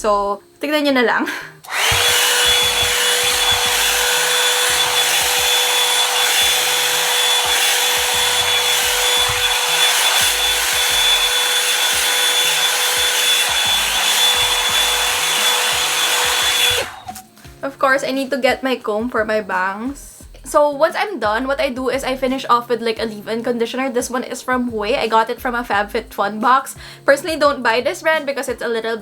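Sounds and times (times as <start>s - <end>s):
hot-air brush blowing and whining: 1.5s - 17.6s.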